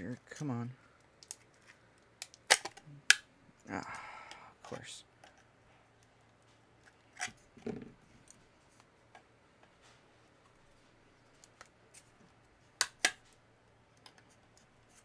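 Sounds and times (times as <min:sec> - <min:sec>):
plastic casing cracking and snapping: 0:01.2 - 0:03.2.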